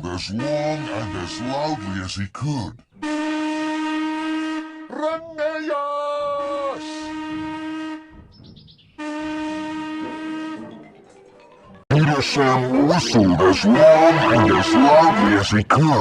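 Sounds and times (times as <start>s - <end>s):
steam locomotive whistle: 3.0s - 5.0s, 6.4s - 8.2s, 9.0s - 10.8s, 13.5s - 15.5s
person shouting: 4.9s - 7.1s.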